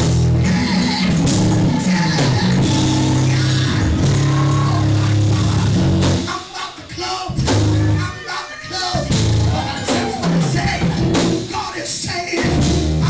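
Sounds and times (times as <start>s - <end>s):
loud sustained bass line: 0.0s - 6.3s, 7.4s - 8.0s, 12.5s - 13.0s
live band music: 0.0s - 13.0s.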